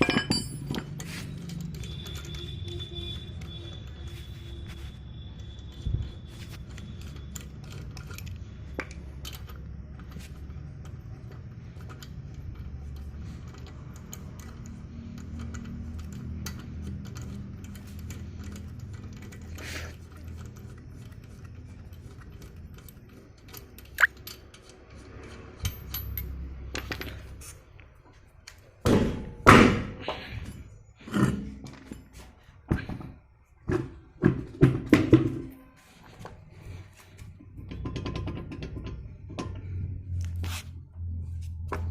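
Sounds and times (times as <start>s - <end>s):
vehicle engine low rumble: 0.0s - 24.0s, 36.3s - 41.9s.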